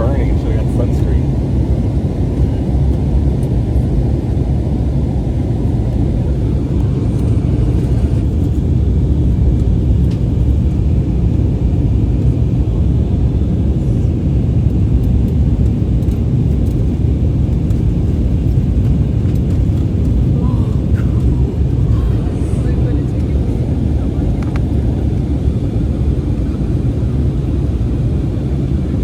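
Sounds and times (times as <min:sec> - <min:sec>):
jet engines rumbling in cabin: 0:00.0 - 0:29.0
rushing airflow: 0:17.1 - 0:29.0.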